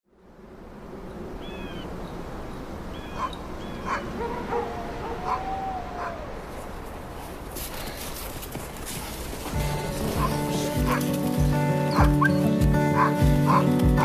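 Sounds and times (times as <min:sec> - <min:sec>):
dogs yelping and barking: 0:03.0 - 0:06.6, 0:09.7 - 0:14.0
dog whining: 0:03.9 - 0:06.4.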